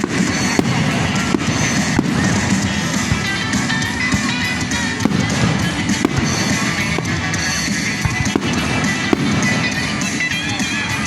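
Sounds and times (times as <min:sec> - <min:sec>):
fireworks popping and crackling: 0:00.0 - 0:11.0
music from a speaker: 0:00.0 - 0:11.0.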